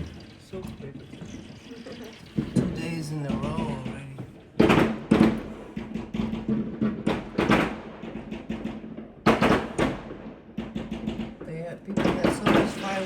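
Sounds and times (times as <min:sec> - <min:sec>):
fireworks bangs with echoes: 0:02.4 - 0:13.0
small firework pops: 0:04.2 - 0:13.0.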